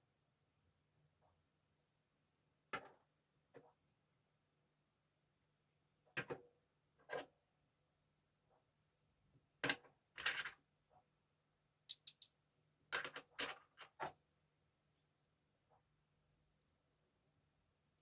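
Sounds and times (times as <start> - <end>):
sharp high clicks: 11.9 - 12.3.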